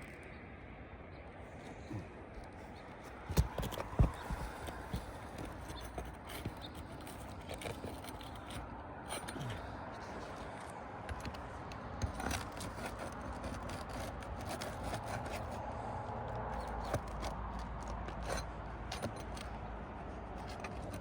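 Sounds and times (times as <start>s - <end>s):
tool scraping under shingles: 1.5s - 21.0s.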